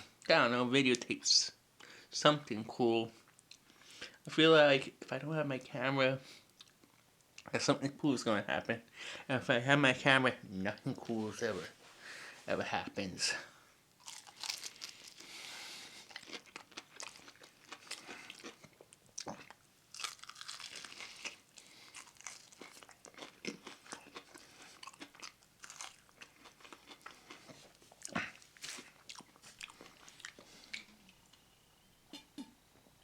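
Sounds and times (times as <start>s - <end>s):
crunchy chewing: 14.0s - 31.2s.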